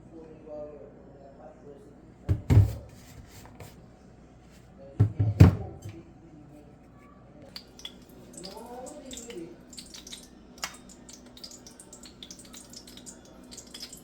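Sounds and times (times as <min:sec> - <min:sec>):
food popping and crackling: 0:07.5 - 0:14.0.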